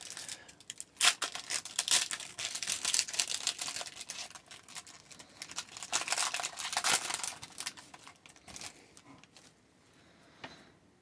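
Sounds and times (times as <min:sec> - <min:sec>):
wrapper crinkling and rustling: 0:00.0 - 0:09.5.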